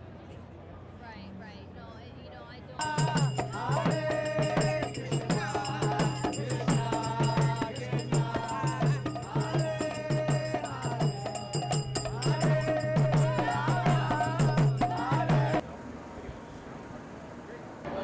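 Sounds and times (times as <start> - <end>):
chanted singing: 2.8 - 15.6
hand percussion beat: 2.8 - 15.6.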